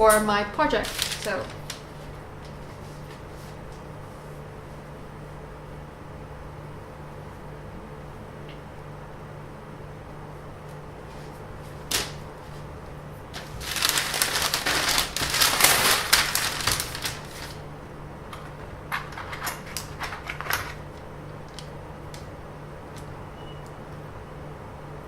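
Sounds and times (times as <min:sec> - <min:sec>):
crackling rustling handling noise: 0:00.0 - 0:05.0, 0:10.3 - 0:24.0
steady low hum: 0:00.0 - 0:25.0.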